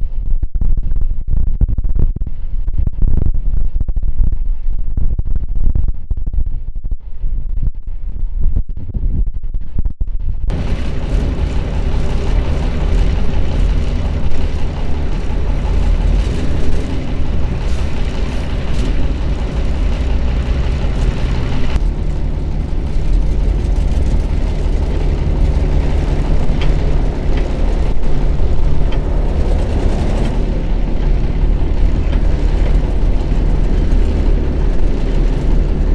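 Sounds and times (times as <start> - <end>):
heavy diesel engine running: 10.5 - 35.9.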